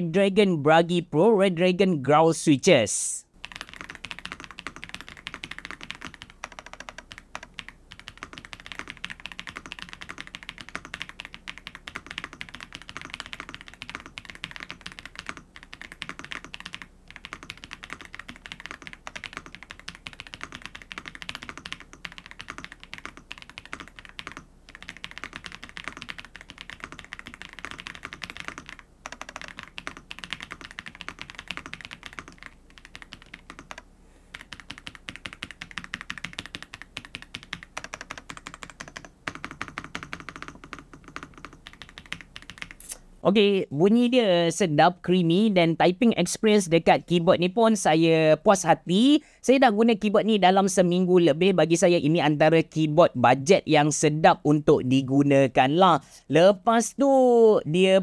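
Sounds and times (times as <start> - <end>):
fast typing on mechanical keyboard: 3.4 - 43.0.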